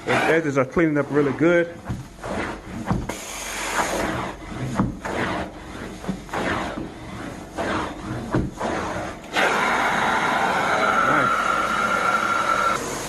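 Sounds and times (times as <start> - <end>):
brush scrubbing carpet: 0.1 - 9.7
machine with high whine: 9.3 - 13.0.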